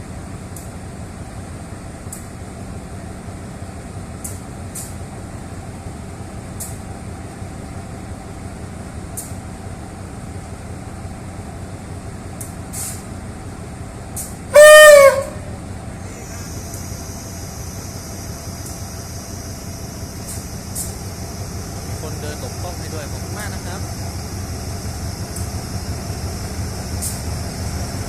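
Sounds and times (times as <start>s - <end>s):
diesel locomotive engine running: 0.0s - 28.0s
locomotive horn blast: 14.5s - 15.6s.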